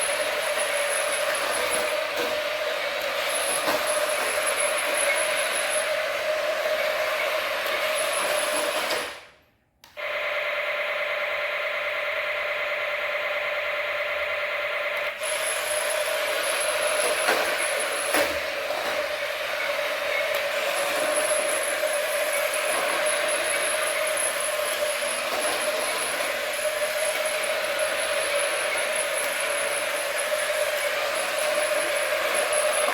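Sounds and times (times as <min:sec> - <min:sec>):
small electric motor whirring: 0:15.2 - 0:32.9.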